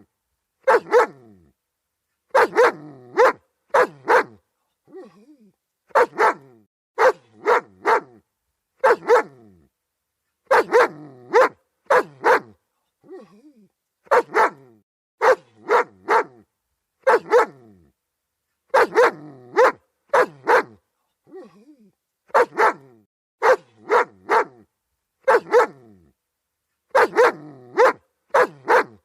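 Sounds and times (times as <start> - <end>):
dog barking: 0.6 - 1.3, 2.3 - 4.4, 5.9 - 8.2, 8.8 - 9.4, 10.5 - 12.6, 14.1 - 16.4, 17.0 - 17.6, 18.7 - 20.8, 22.3 - 25.9, 26.9 - 29.0.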